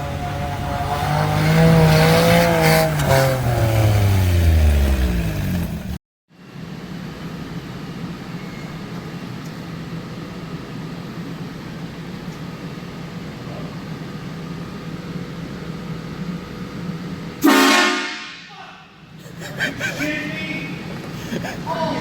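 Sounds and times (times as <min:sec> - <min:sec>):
train horn blast: 0:17.4 - 0:18.5.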